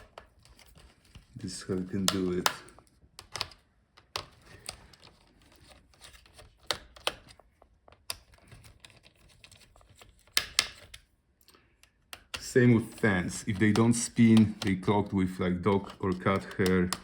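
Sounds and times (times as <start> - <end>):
small tools clicking and tapping: 2.0 - 17.0.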